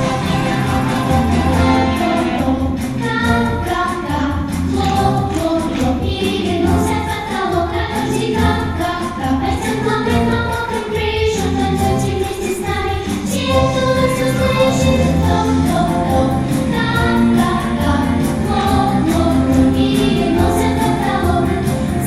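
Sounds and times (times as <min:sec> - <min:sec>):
backing track with beat and bass: 0:00.0 - 0:07.5
people singing together: 0:00.0 - 0:22.0.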